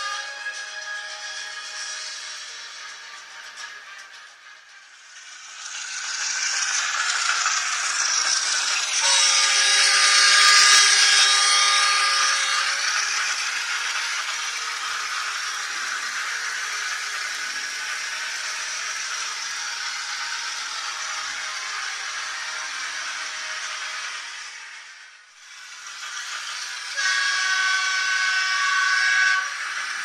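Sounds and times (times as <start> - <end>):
model locomotive horn: 0.0 - 1.3, 9.0 - 12.7, 26.9 - 30.0.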